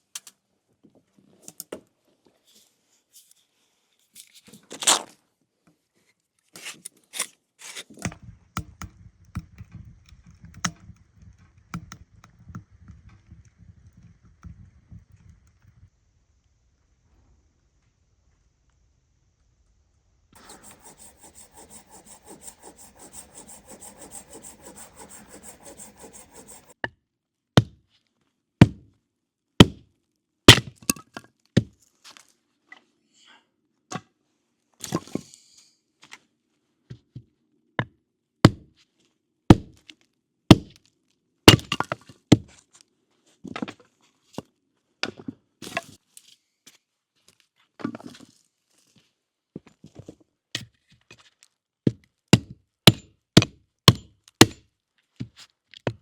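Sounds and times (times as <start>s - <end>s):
hand saw cutting wood: 20.4s - 26.8s.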